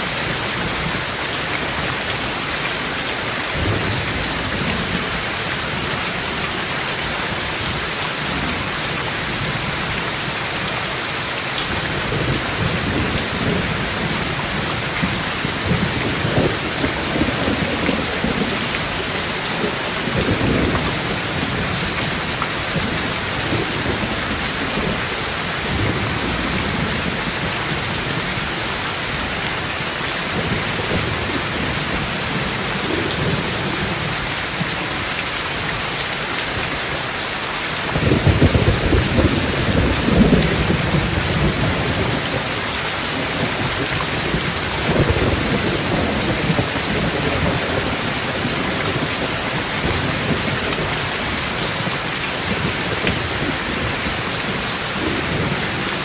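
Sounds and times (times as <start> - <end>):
steady rain: 0.0 - 56.0
rolling thunder: 37.9 - 42.4.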